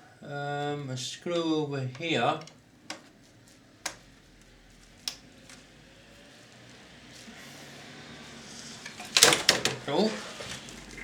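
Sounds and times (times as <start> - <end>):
sharp clicks: 3.8 - 4.1, 5.0 - 5.6.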